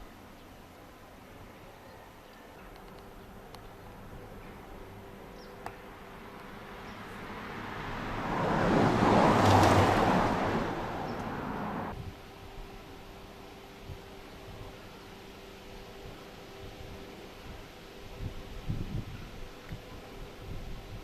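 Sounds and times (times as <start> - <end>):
vehicle passing by: 5.9 - 12.0.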